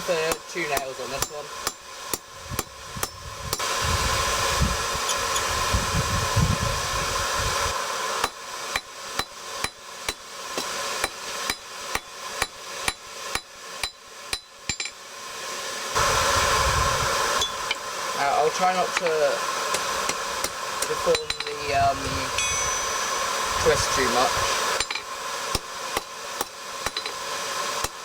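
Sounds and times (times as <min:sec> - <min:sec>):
hammer striking hot steel on anvil: 0:00.2 - 0:03.7, 0:08.2 - 0:15.0, 0:18.9 - 0:24.0, 0:24.8 - 0:27.2
steady rushing noise: 0:15.9 - 0:25.5.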